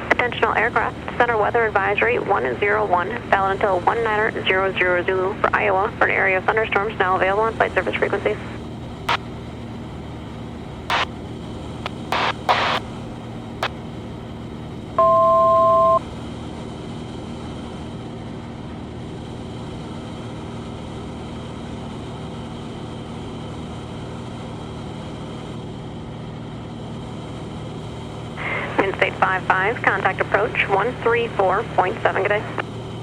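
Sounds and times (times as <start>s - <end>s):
airplane engine droning: 0.0s - 33.0s
short crackles: 11.8s - 12.8s
two-tone electronic beep: 15.0s - 16.0s.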